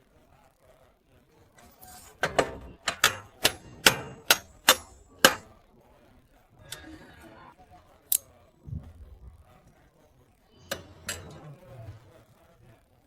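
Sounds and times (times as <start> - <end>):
hammer striking metal: 1.8 - 5.5, 10.6 - 11.9.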